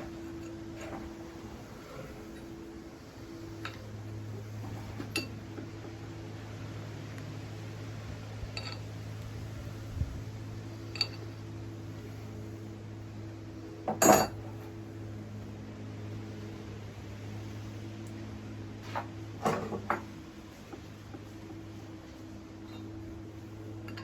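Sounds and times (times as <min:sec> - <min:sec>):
steady low hum: 0:00.0 - 0:24.0
metal tools clanking: 0:04.6 - 0:05.4, 0:08.5 - 0:09.0, 0:10.8 - 0:11.4, 0:13.9 - 0:14.6.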